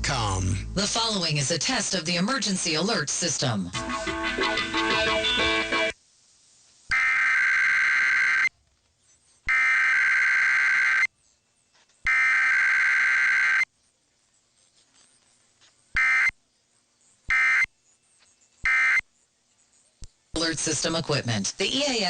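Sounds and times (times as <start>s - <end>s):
radio music: 0.0s - 6.0s, 20.4s - 22.0s
screechy digital data tones: 6.9s - 8.5s, 9.5s - 11.1s, 12.0s - 13.7s, 16.0s - 16.4s, 17.3s - 17.7s, 18.6s - 19.1s.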